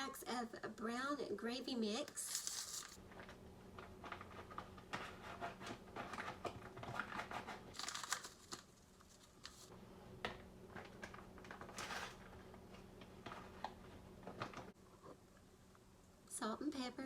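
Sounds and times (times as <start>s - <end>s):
packets crinkling and tearing: 2.2s - 3.0s, 7.7s - 9.7s.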